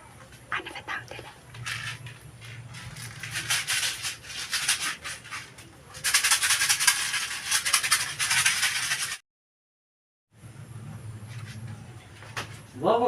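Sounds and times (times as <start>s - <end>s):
rapid scratchy rustling: 0.6s - 9.2s.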